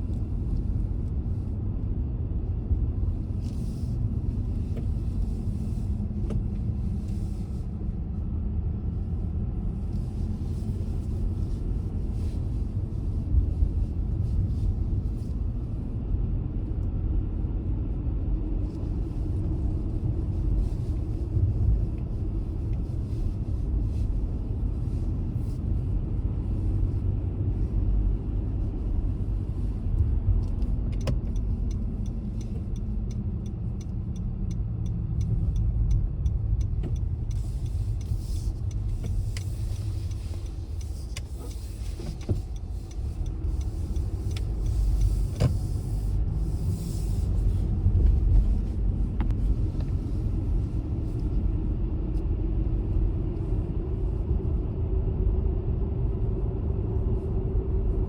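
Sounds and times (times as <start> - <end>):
car engine and road noise: 0.0 - 58.0
light ticking: 30.5 - 45.7.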